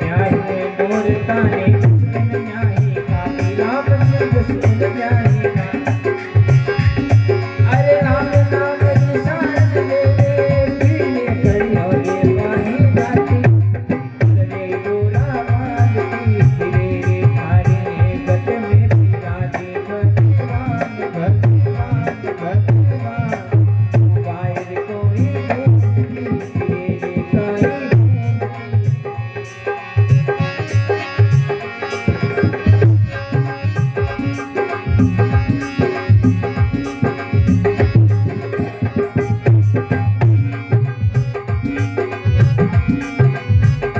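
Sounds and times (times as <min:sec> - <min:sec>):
hand drums: 0:00.0 - 0:43.9.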